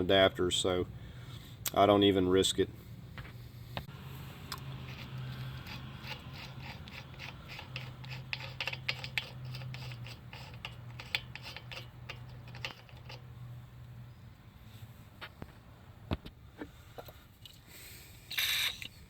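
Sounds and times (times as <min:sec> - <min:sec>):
hand tools clicking and scraping: 0:04.4 - 0:13.3.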